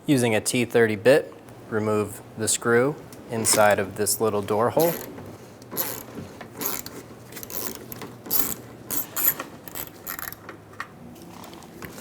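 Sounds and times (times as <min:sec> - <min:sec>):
hand ratchet clicking: 0:04.8 - 0:05.1, 0:05.7 - 0:10.4.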